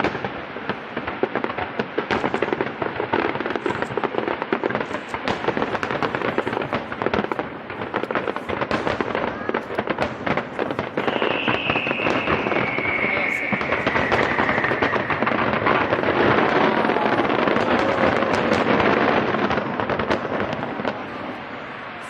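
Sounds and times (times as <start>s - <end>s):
fireworks crackling and banging: 0.0s - 22.0s
falling firework whistle: 8.7s - 20.2s.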